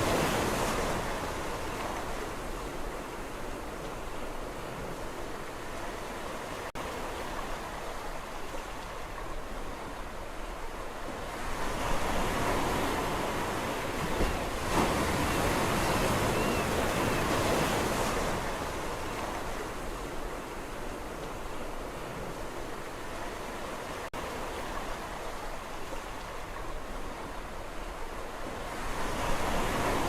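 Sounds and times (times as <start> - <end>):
sea waves breaking: 0.0 - 30.0.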